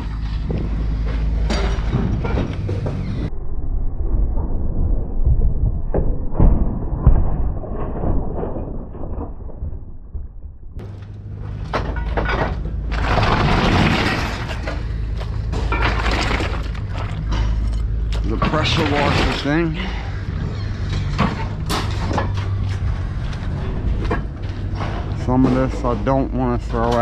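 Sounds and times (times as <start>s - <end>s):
metal clattering: 10.8s - 27.0s
scrap metal crashing onto pile: 11.6s - 17.7s, 18.3s - 20.0s.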